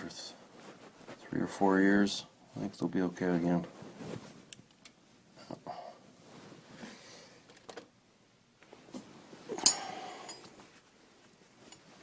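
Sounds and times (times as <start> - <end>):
ringing metallic clink: 9.6 - 10.5.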